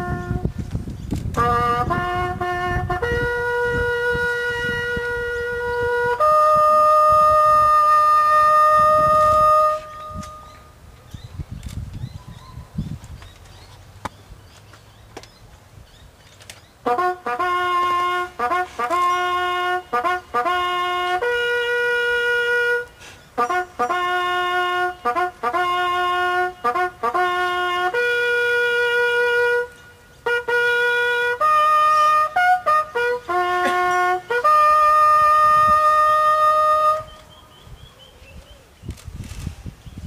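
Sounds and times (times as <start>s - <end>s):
bugle call: 1.4s - 10.8s, 16.8s - 37.3s.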